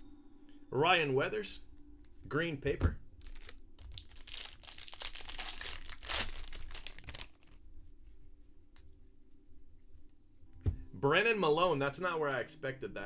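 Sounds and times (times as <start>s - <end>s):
foil wrapper crinkling and tearing: 3.2s - 7.6s.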